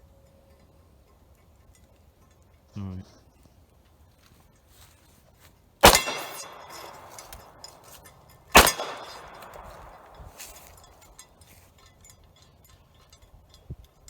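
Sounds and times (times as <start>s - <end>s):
handgun shots with echo: 5.8s - 8.0s, 8.6s - 10.8s.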